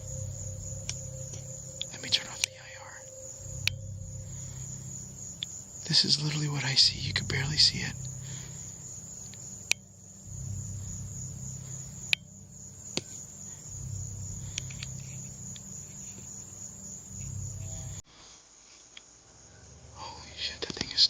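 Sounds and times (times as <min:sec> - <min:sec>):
crickets chirring: 0:00.0 - 0:18.0
low rumble: 0:00.0 - 0:18.0.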